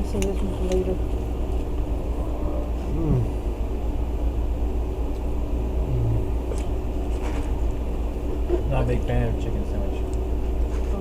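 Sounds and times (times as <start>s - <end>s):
low vehicle rumble: 0.0s - 8.6s.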